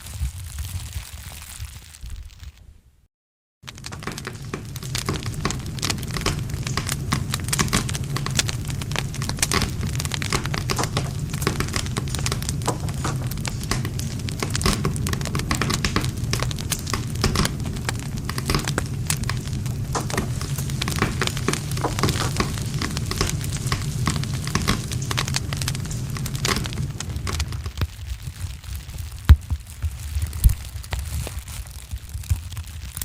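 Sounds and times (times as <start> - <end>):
low rumble of flames: 3.6 - 33.0
wood fire crackling: 3.6 - 33.0.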